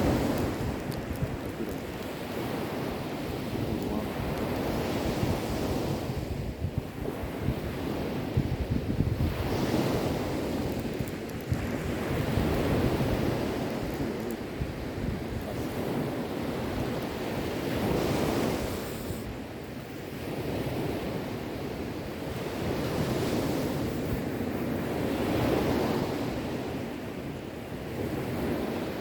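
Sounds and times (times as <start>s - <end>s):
sea waves washing: 0.0s - 6.4s, 9.2s - 27.2s.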